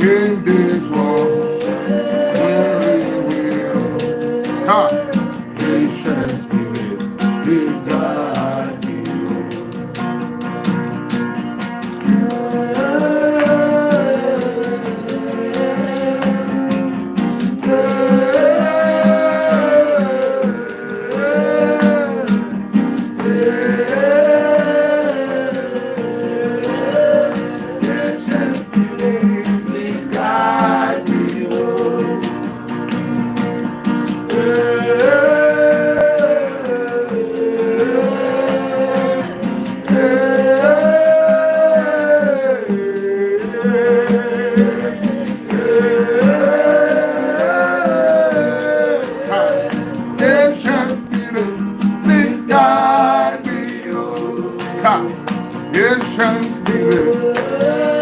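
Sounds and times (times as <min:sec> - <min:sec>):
man singing gliding notes: 0:00.0 - 0:08.5
person singing long notes: 0:00.0 - 0:09.5, 0:12.1 - 0:22.6, 0:23.2 - 0:32.5, 0:34.3 - 0:55.1, 0:56.4 - 0:58.0
plucked acoustic guitar: 0:00.0 - 0:58.0.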